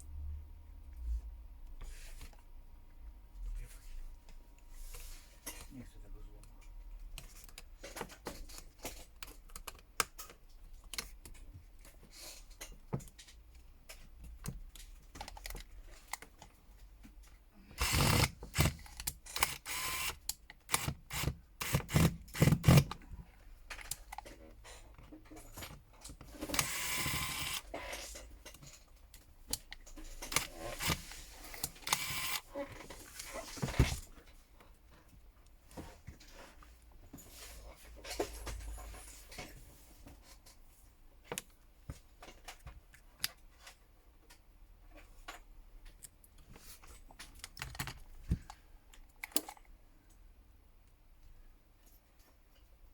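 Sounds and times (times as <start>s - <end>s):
small clicks and taps of phone parts: 7.1s - 11.6s
scraping or rustling: 30.0s - 34.2s.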